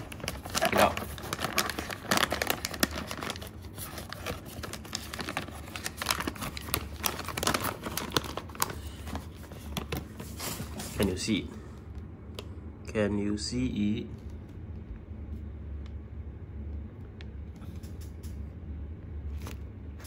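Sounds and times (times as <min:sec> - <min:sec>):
snack packaging crinkling: 0:00.0 - 0:11.1, 0:19.3 - 0:19.8.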